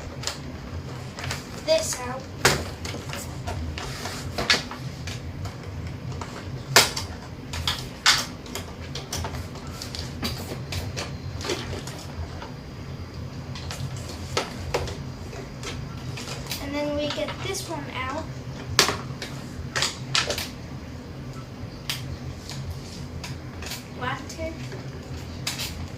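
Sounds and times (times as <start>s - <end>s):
steady low hum: 0.0s - 25.9s.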